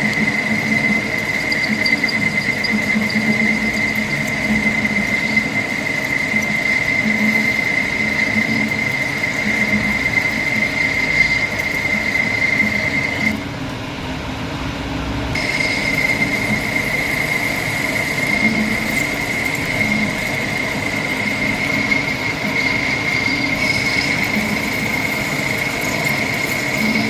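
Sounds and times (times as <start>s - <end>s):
lathe high-pitched whine: 0.0s - 14.0s, 15.3s - 27.0s.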